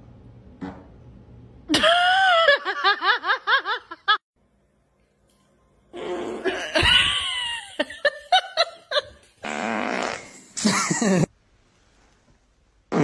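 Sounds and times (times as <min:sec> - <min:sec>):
person laughing hard: 0:01.7 - 0:04.2, 0:06.5 - 0:09.2, 0:10.6 - 0:11.3.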